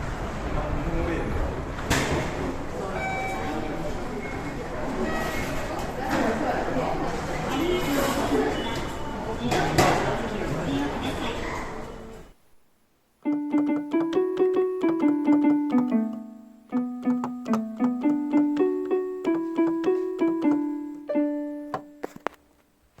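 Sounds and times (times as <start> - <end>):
piano melody of quick notes: 13.2 - 22.1.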